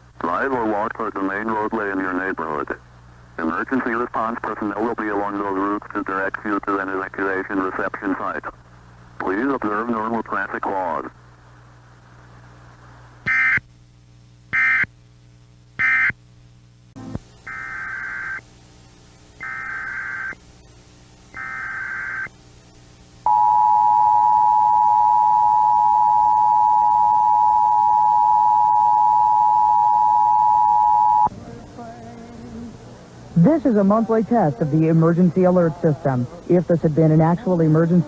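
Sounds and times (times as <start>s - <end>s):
data bursts: 17.0s - 18.4s, 19.4s - 20.4s, 21.4s - 22.3s
two-tone attention signal: 23.3s - 31.3s.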